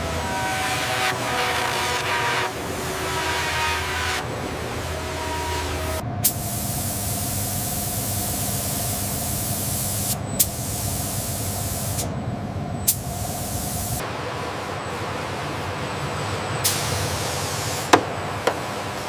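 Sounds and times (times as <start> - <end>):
hissing spray: 6.2 - 12.1, 12.9 - 14.0, 16.6 - 18.0.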